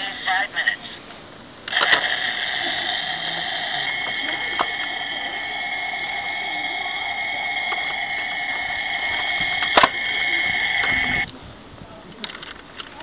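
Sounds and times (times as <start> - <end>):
toy electronic engine drone: 1.7 - 11.3.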